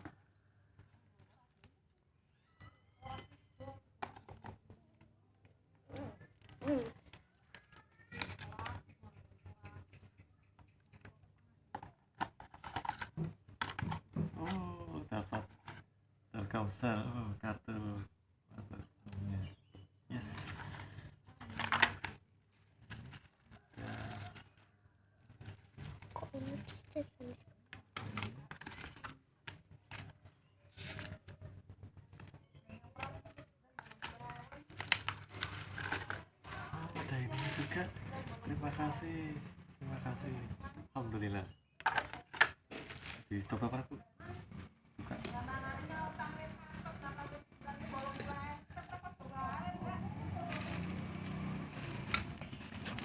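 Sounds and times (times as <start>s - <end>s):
cardboard and paper rustling: 11.8s - 14.6s, 21.4s - 38.5s, 41.8s - 43.5s, 44.5s - 53.0s.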